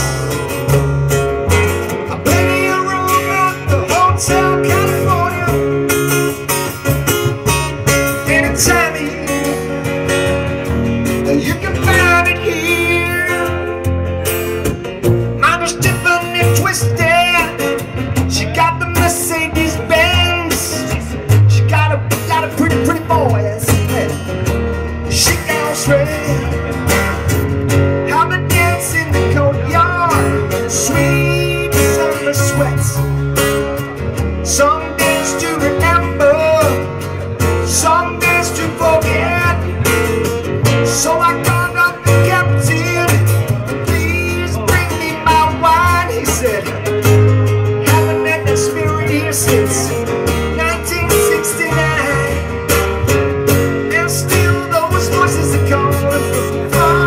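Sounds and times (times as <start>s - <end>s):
band playing: 0.0s - 57.0s
person singing: 2.0s - 6.3s, 7.8s - 10.0s, 11.1s - 13.8s, 15.4s - 24.3s, 28.0s - 33.2s, 34.4s - 47.0s, 47.7s - 52.7s, 53.6s - 57.0s.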